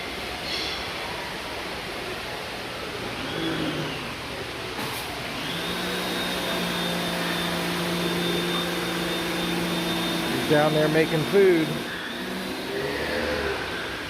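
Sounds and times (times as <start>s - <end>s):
motor running with high whine: 4.8s - 14.0s
brief rising and falling whine: 6.3s - 14.0s.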